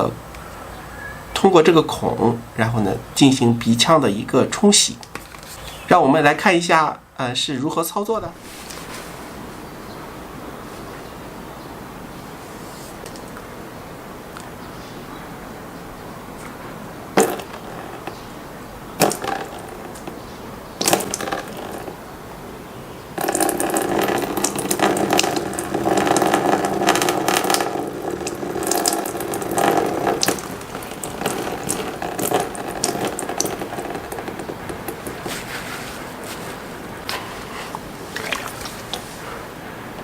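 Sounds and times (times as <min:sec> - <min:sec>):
water splashing and dribbling: 0:20.8 - 0:22.0, 0:23.1 - 0:39.6.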